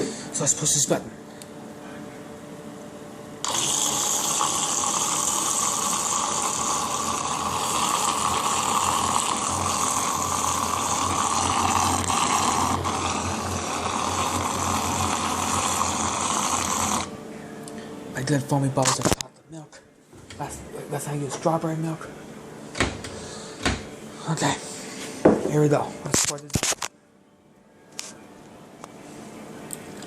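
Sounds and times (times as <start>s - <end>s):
small mixer motor running: 3.4s - 17.1s.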